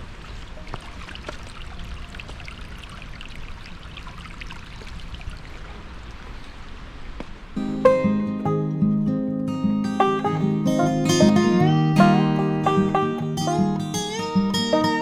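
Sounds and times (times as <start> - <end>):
running water with splashes: 0.0 - 7.4.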